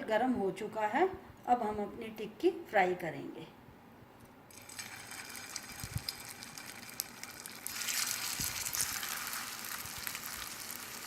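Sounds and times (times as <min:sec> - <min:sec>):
patties sizzling in hot oil: 0:04.5 - 0:11.0.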